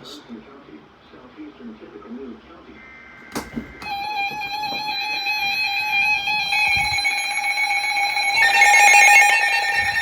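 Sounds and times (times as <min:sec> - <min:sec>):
buzzy electronic alert tone: 0:06.3 - 0:10.0.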